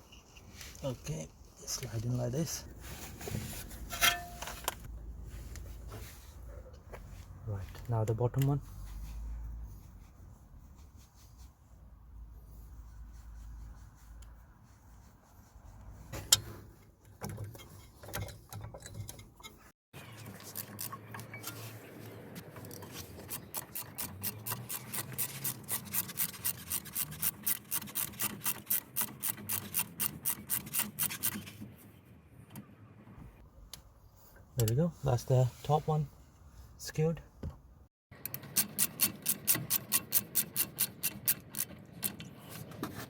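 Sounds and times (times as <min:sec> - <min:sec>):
soft rubbing: 0:00.0 - 0:16.8
ratchet wrench clicking: 0:23.3 - 0:31.3, 0:38.2 - 0:42.2.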